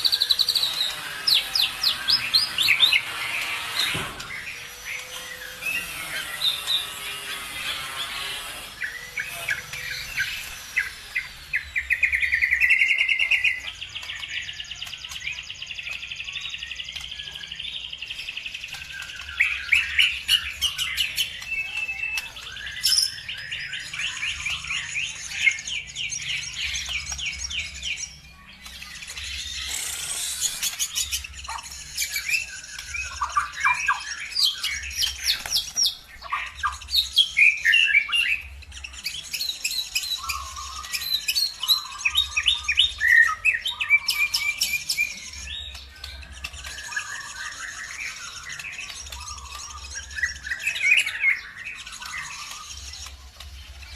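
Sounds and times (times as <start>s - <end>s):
long buzzy bird trill: 0.0s - 53.9s
songbirds chirping and trilling: 0.0s - 53.9s.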